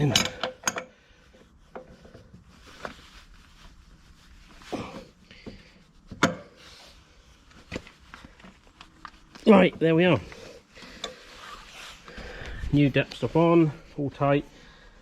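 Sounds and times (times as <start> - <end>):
spanner clinking on metal: 0.0 - 0.9.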